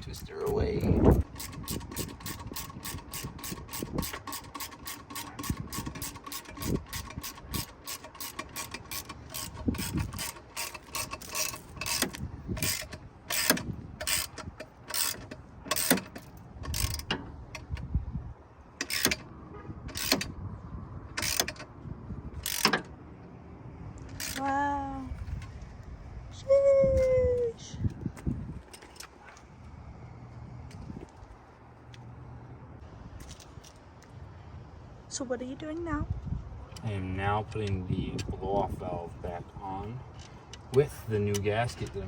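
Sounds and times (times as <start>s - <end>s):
ratchet wrench clicking: 0.4s - 17.7s, 18.8s - 19.2s, 19.9s - 20.3s, 21.2s - 21.7s, 22.4s - 22.8s, 24.2s - 24.4s.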